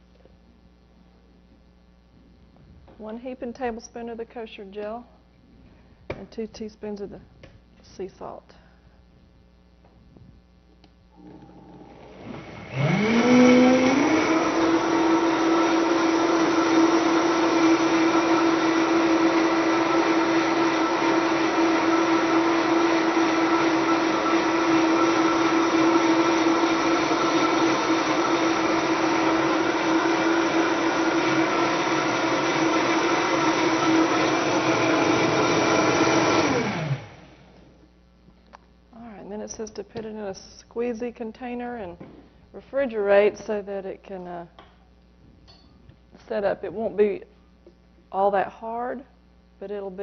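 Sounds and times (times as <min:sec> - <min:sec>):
blender motor whining: 0:11.2 - 0:37.6.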